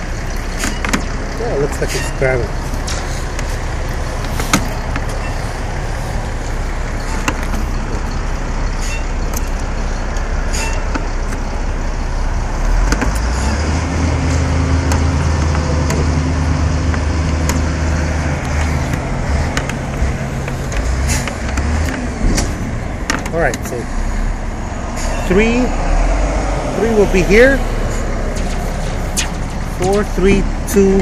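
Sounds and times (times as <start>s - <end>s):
noisy background: 0.0s - 31.0s
roof seamer motor hum: 0.0s - 31.0s
sharp clicks: 27.9s - 30.4s.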